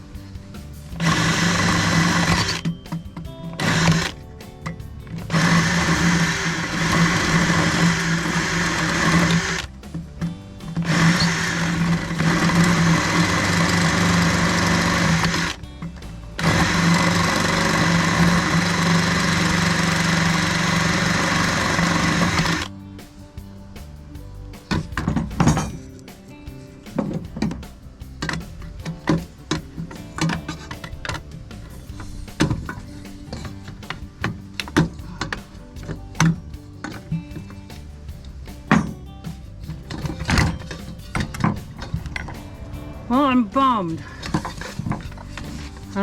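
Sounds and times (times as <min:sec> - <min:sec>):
electric power tool motor: 0:01.0 - 0:02.6, 0:03.6 - 0:04.2, 0:05.3 - 0:09.7, 0:10.8 - 0:15.6, 0:16.4 - 0:22.7.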